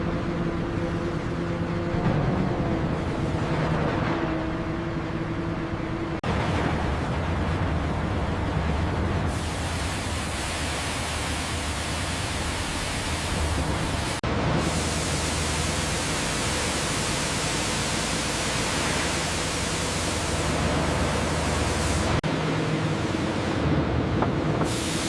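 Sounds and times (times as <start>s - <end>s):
industrial machinery hiss: 9.3s - 22.2s, 24.6s - 25.0s.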